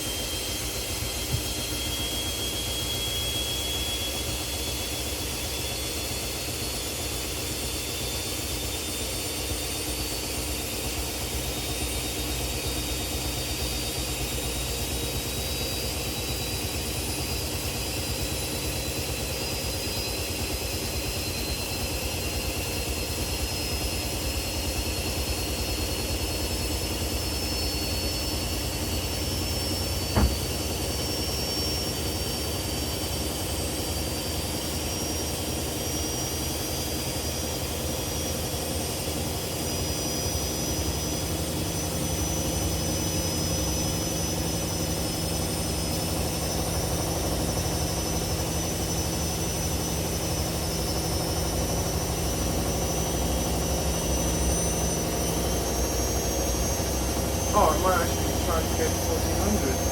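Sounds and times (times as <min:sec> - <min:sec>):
motor whine rising in pitch: 0:00.0 - 0:59.9
washing machine drum rumble: 0:30.1 - 0:30.8.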